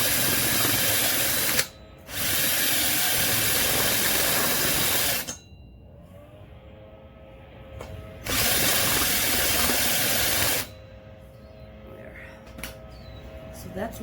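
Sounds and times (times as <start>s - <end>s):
cordless drill boring metal: 0.0s - 5.4s, 8.2s - 10.8s.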